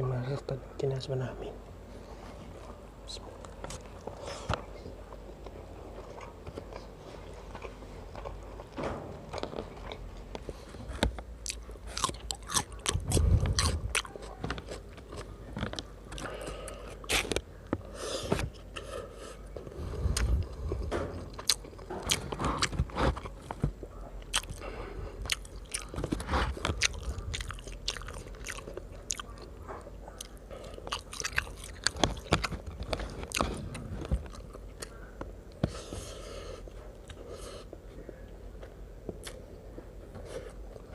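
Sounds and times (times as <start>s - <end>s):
person chewing crunchy food: 5.3s - 35.0s, 39.1s - 39.5s.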